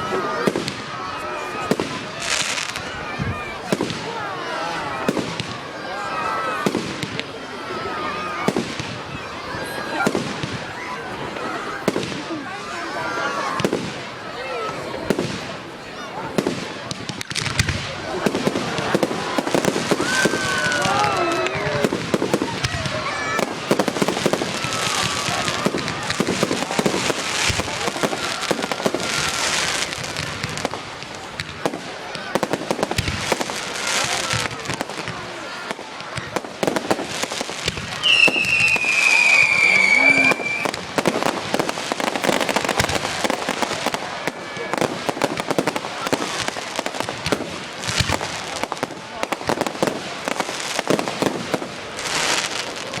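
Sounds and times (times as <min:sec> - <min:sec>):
fireworks bangs and crackles: 0:00.0 - 0:53.0
fireworks hissing fizz: 0:00.4 - 0:04.0, 0:16.3 - 0:53.0.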